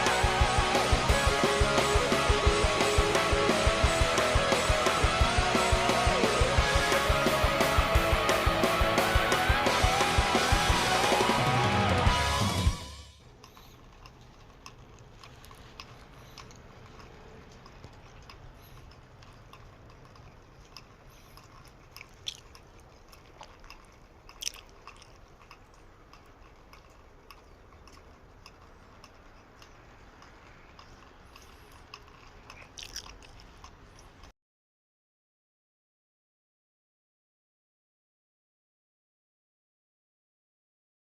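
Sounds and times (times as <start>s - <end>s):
small clicks and crackles: 13.2s - 34.3s.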